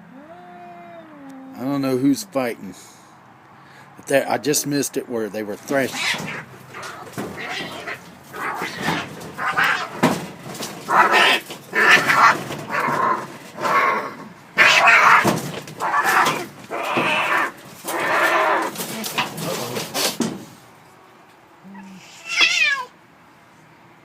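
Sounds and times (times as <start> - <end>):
cats yowling and screeching: 0.0 - 1.8, 5.8 - 19.3, 21.8 - 23.0.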